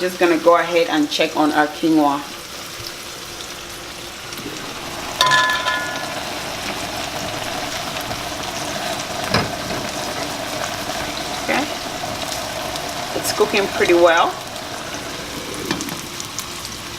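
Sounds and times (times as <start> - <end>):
boiling water bubbling: 0.0 - 16.9
onions sizzling in a pan: 0.0 - 16.9
metal lid clinking: 5.2 - 6.7.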